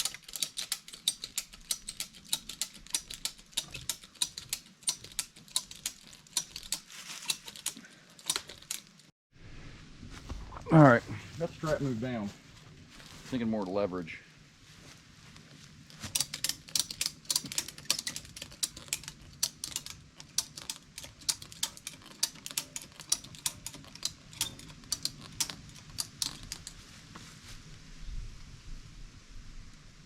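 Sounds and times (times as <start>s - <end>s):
ratchet strap clicking: 0.0s - 9.1s, 15.9s - 26.8s.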